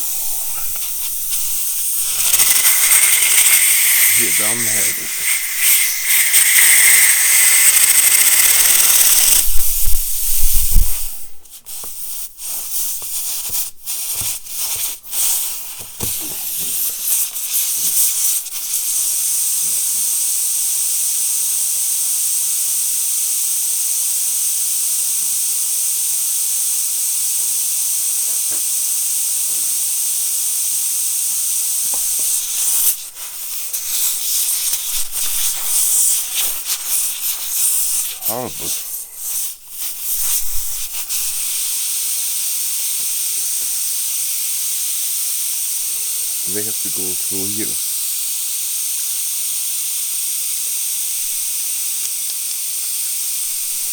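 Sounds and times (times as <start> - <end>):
air hissing out of tire: 0.0 - 13.0, 32.0 - 42.2.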